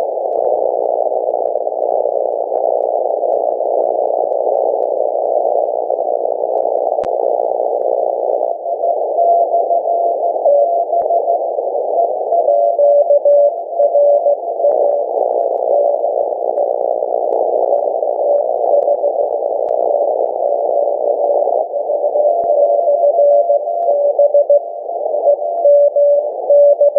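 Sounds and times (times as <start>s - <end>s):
radio noise hiss: 0.0s - 26.9s
morse code tones: 8.7s - 15.9s, 22.0s - 26.9s.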